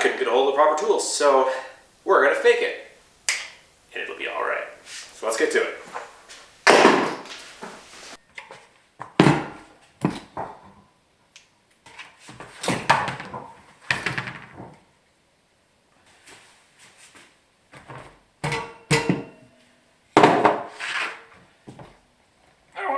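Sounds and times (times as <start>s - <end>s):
bike parts and tools clattering: 5.8s - 7.9s, 17.9s - 20.6s.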